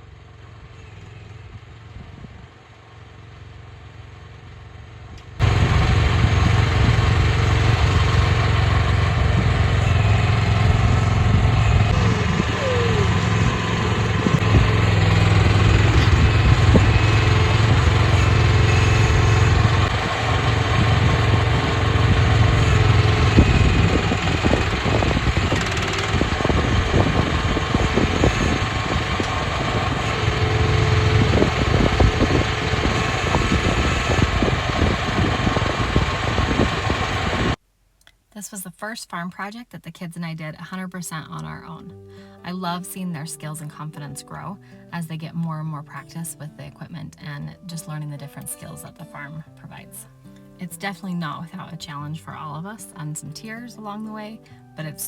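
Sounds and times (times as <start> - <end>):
mini excavator engine running: 0.0 - 37.6.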